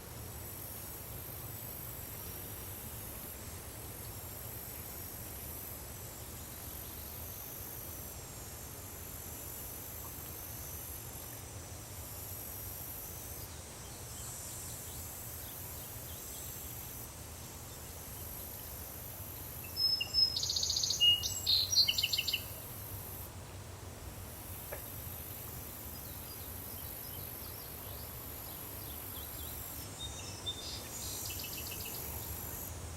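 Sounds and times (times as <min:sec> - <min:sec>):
high insect drone: 0:00.0 - 0:32.9
steady background hiss: 0:00.0 - 0:32.9
bird singing: 0:19.6 - 0:22.6, 0:26.0 - 0:32.1.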